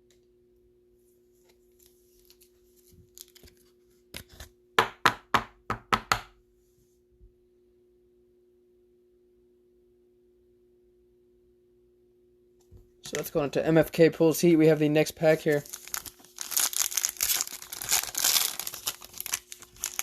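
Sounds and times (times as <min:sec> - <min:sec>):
card handling rustle: 0:01.6 - 0:04.3, 0:14.9 - 0:20.0.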